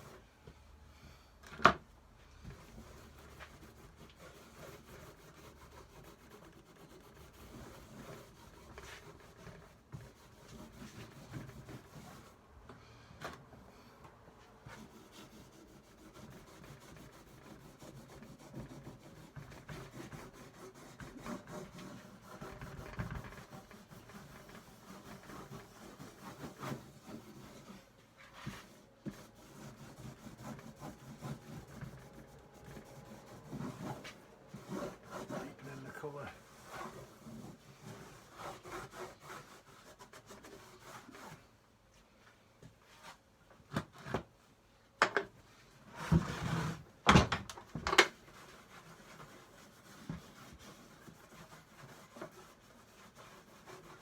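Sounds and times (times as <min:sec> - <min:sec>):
cloth rubbing on wood: 0:14.7 - 0:41.5, 0:48.2 - 0:54.0.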